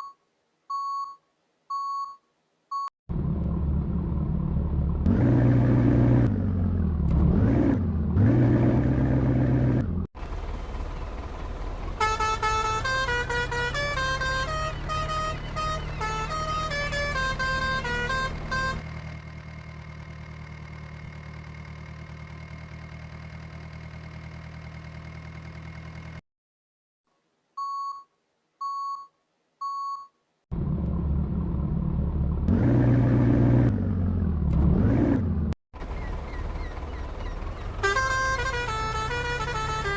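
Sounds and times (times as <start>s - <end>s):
short electronic beeps: 0.0s - 2.9s, 27.6s - 30.2s
low engine hum: 3.1s - 26.2s, 30.5s - 39.9s
vehicle engine rising and falling: 3.1s - 26.2s, 30.5s - 39.9s.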